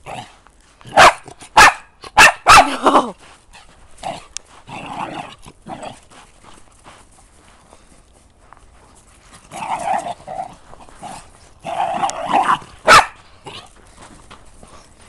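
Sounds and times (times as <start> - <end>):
dog barking and growling: 0.0 - 3.2, 4.0 - 6.1, 9.4 - 13.8.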